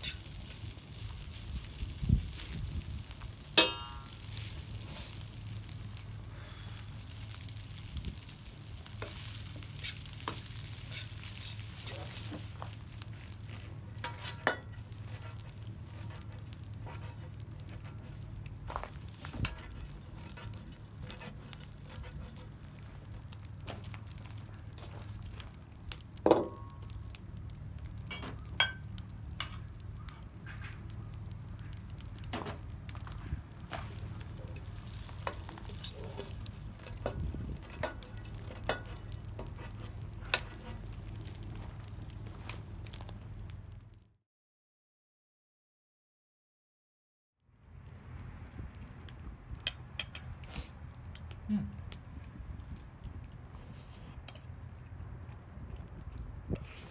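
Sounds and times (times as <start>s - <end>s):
rice sizzling in a pan: 0.0s - 43.8s, 49.6s - 50.8s.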